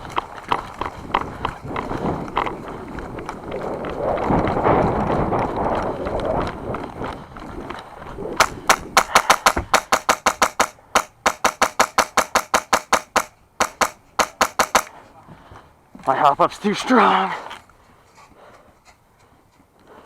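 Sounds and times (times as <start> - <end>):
airsoft rifle firing: 8.4 - 15.0.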